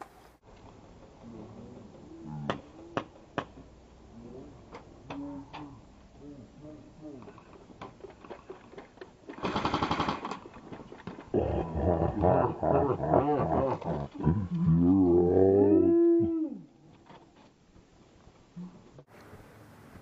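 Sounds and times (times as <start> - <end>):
rapid burst of gunshots: 9.4 - 10.3
growling voice ending in howl: 11.4 - 16.6.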